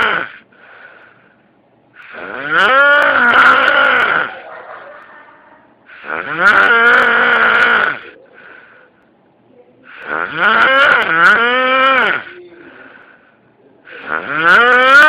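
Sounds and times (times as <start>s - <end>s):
man snoring loudly: 0.0s - 0.4s, 2.0s - 4.4s, 5.9s - 8.1s, 9.9s - 12.3s, 13.9s - 15.0s
faint breath: 0.4s - 2.1s, 8.1s - 9.2s, 12.3s - 14.2s.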